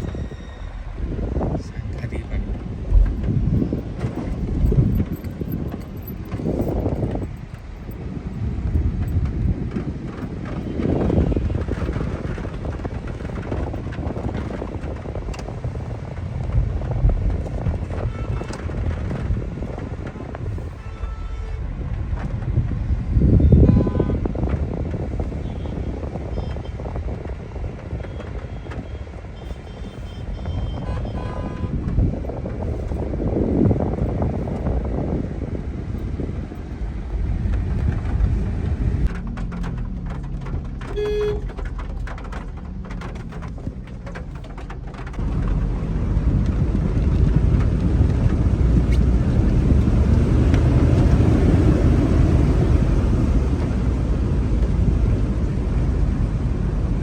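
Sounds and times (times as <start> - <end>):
car driving through water: 32.0 - 57.0
heavy rain: 36.6 - 57.0.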